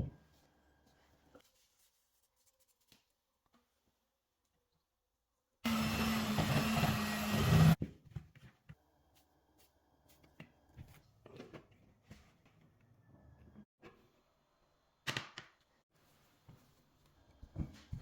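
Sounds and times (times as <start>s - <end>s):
kitchen appliance motor running: 5.7s - 7.8s.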